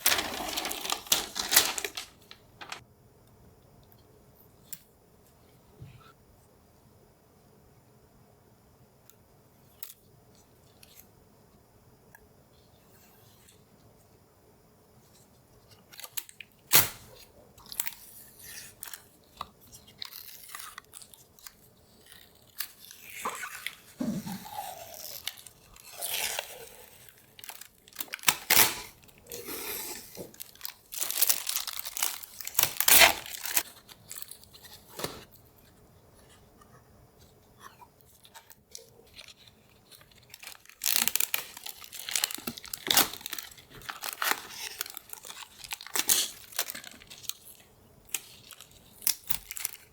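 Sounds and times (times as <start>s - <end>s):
plastic packaging crinkling: 0.0s - 2.8s, 25.0s - 29.4s, 30.1s - 35.3s, 38.1s - 49.9s.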